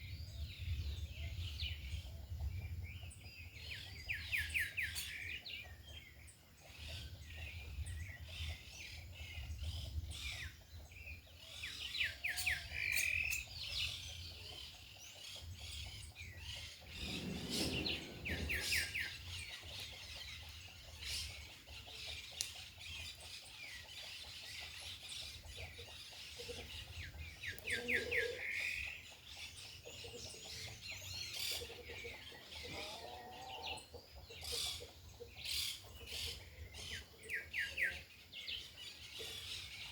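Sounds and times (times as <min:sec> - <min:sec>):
wind rumble on microphone: 0:00.0 - 0:06.1, 0:06.8 - 0:11.8, 0:15.3 - 0:21.5
small birds chirping: 0:00.2 - 0:39.9
hens clucking: 0:31.7 - 0:35.0.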